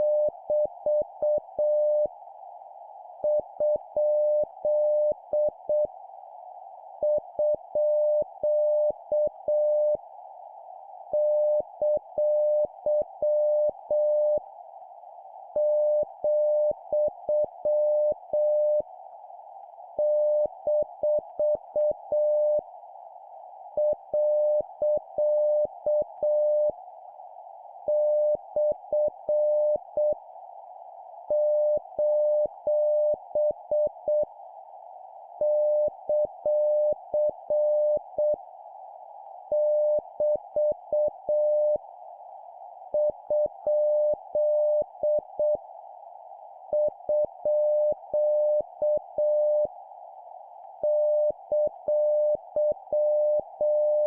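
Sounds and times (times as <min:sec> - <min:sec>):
morse code beeps: 0:50.9 - 0:54.0.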